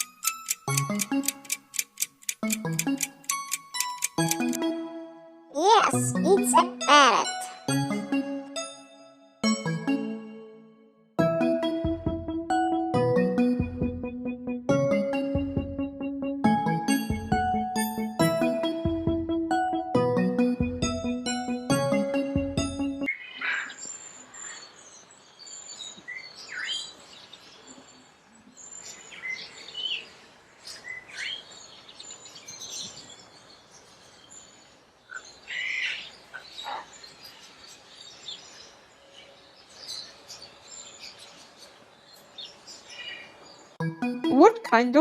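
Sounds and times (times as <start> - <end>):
birds chirping and calling: 28.8 - 43.4.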